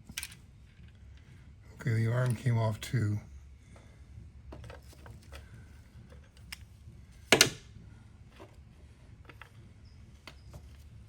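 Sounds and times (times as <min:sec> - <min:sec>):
metal parts clicking and clinking: 0:00.1 - 0:00.4.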